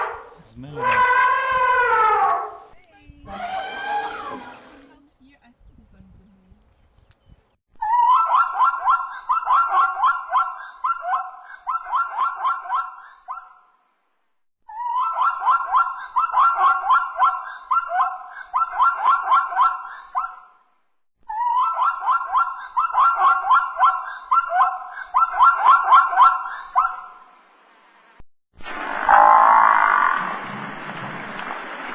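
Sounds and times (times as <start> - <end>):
animal making short pitched calls: 0.0 - 2.7.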